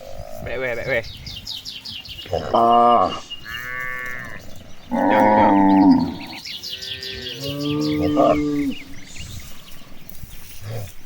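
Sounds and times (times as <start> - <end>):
cattle mooing: 2.3 - 9.1.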